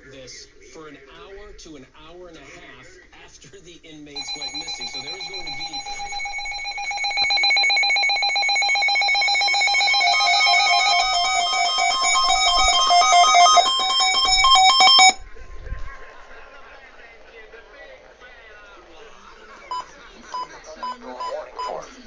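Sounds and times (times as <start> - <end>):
pulsing electronic alert beeps: 4.2 - 15.2.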